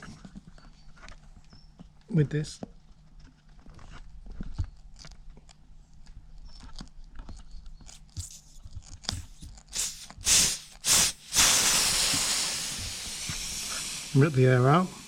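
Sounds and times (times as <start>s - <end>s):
air hissing out of tyre: 9.7s - 15.0s.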